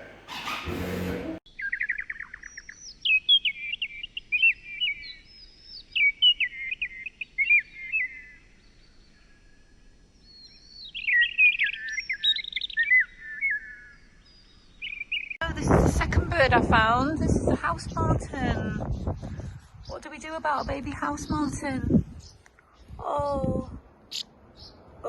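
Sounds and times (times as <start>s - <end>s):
burst of noise: 0.0s - 1.4s
songbird warbling: 0.0s - 8.4s, 10.5s - 15.4s.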